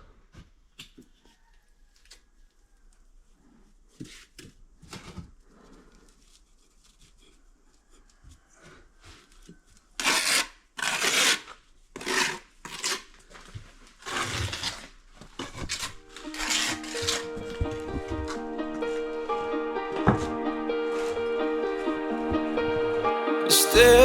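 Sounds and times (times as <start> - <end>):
rough scraping on masonry: 10.0 - 17.6.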